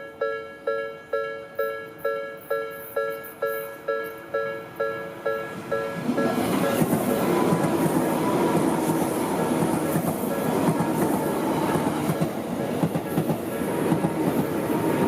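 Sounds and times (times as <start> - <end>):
level crossing warning bell: 0.0 - 7.7
train wheels on rails: 0.0 - 15.0.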